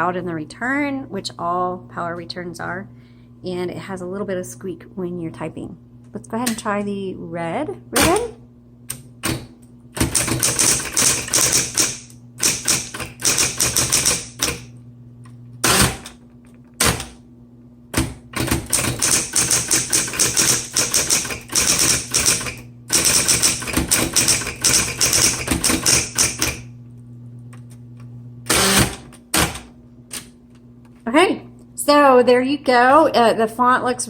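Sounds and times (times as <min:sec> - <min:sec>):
typewriter motor humming: 0:08.0 - 0:14.8, 0:15.6 - 0:17.2, 0:17.9 - 0:26.7, 0:28.4 - 0:30.3
electric typewriter keystrokes: 0:09.2 - 0:14.7, 0:15.6 - 0:17.2, 0:17.9 - 0:26.7, 0:28.5 - 0:30.3
heavy typewriter clunk: 0:16.8 - 0:17.2.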